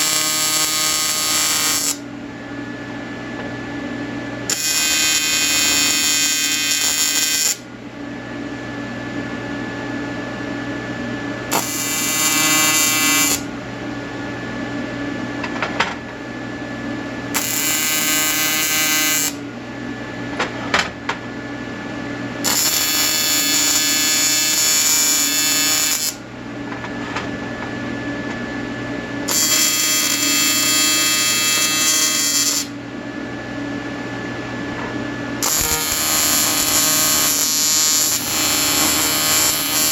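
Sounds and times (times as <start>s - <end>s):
welding arc buzzing: 0.0s - 2.0s, 4.5s - 7.6s, 11.5s - 13.5s, 17.3s - 19.4s, 22.4s - 26.2s, 29.2s - 32.8s, 35.4s - 39.9s
electrical hum: 0.0s - 39.9s.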